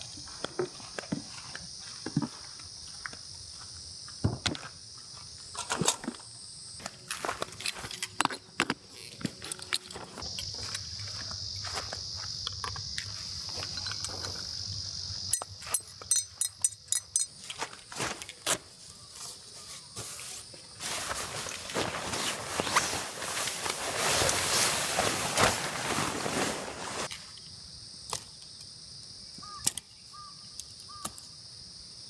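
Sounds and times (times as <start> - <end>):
insect high-pitched buzz: 0.0 - 32.0
rustling hiss: 19.6 - 27.1.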